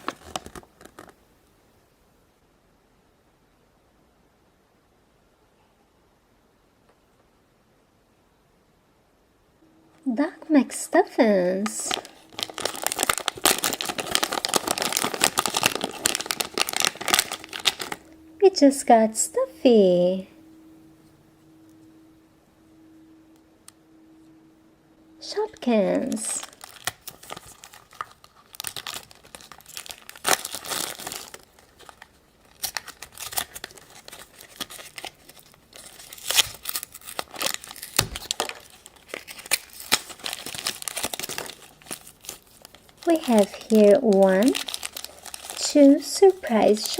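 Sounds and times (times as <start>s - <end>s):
wrapper crinkling and tearing: 0.0s - 1.2s, 11.6s - 18.3s, 25.2s - 46.9s.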